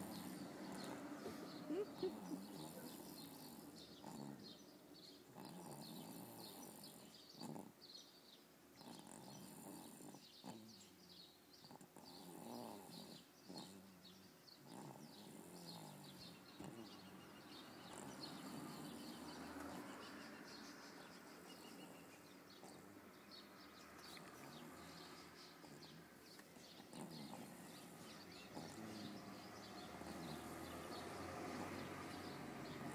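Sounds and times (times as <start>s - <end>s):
baby snoring softly: 0.0s - 4.6s, 5.4s - 7.8s, 8.8s - 10.9s, 11.7s - 13.9s, 14.6s - 17.2s, 17.8s - 20.1s, 24.2s - 32.9s.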